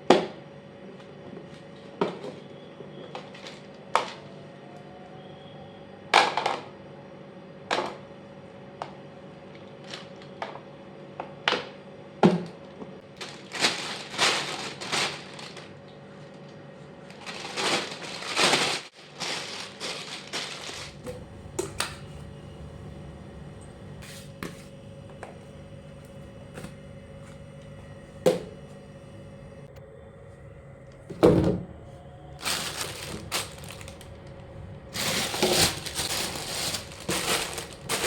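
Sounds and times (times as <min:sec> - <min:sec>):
rustling or scraping: 0:17.1 - 0:22.3, 0:24.0 - 0:24.8, 0:32.4 - 0:38.0
faint steady hum: 0:20.4 - 0:38.0
household items clacking: 0:32.4 - 0:34.1, 0:35.0 - 0:38.0.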